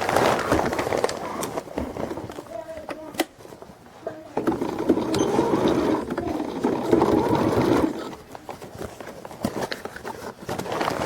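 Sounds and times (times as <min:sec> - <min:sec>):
sewing machine stitching: 0:04.4 - 0:08.2
light clicks and handling noises: 0:08.0 - 0:11.0.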